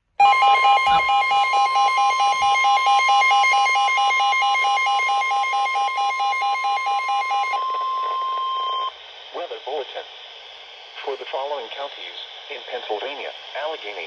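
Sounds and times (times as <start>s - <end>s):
steady electronic alarm tone: 0.0s - 9.0s
rapid electronic beeping: 0.2s - 9.0s.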